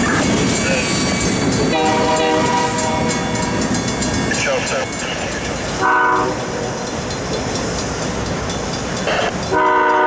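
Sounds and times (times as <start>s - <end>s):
freight train running: 0.0s - 10.0s
locomotive air horn blast: 1.7s - 3.2s, 5.8s - 6.6s, 9.5s - 10.0s.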